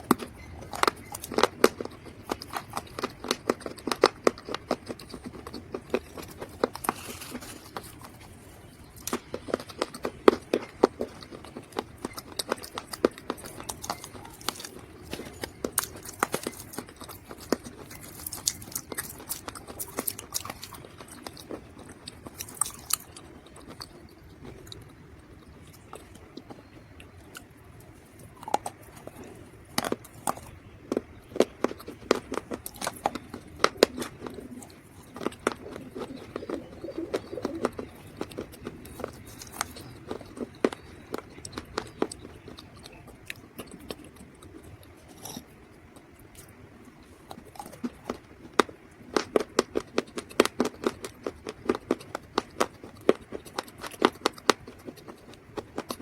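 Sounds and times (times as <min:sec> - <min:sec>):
dried mud crunching: 0:00.0 - 0:56.0.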